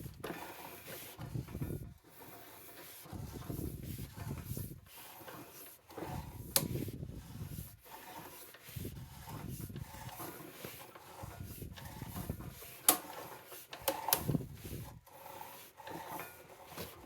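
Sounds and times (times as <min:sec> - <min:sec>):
camera cable scraping in pipe: 0:00.0 - 0:17.0.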